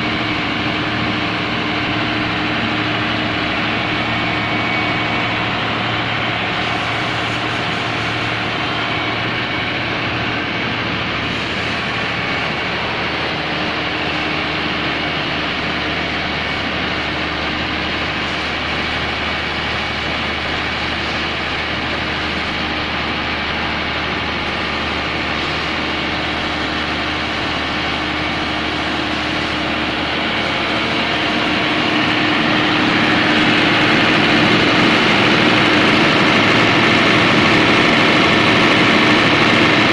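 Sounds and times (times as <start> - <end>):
diesel generator engine running: 0.0 - 39.9.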